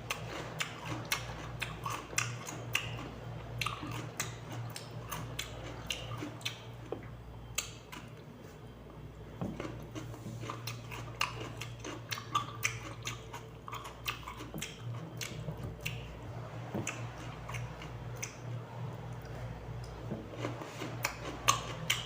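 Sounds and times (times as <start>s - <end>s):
cucumber being bitten and chewed: 0.0s - 6.7s, 9.5s - 16.1s, 19.1s - 22.0s
low steady hum: 0.0s - 22.0s.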